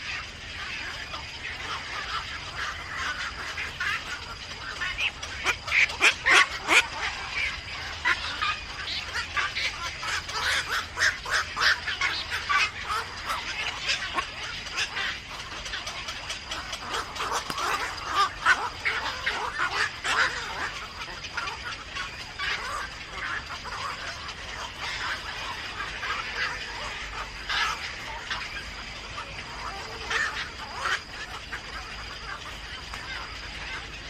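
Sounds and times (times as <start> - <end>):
birds calling harshly: 0.0 - 34.0.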